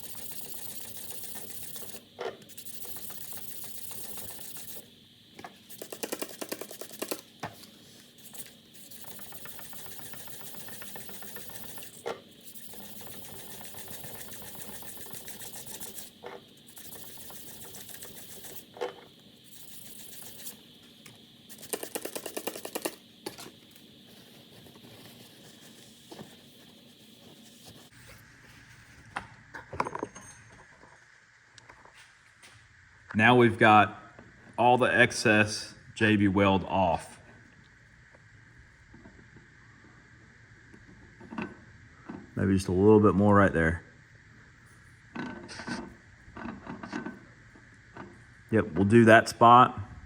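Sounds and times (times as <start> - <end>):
sandpaper rasping: 0.0 - 4.9, 5.7 - 7.2, 8.0 - 18.7, 19.5 - 20.6
steady high whine: 0.0 - 37.6.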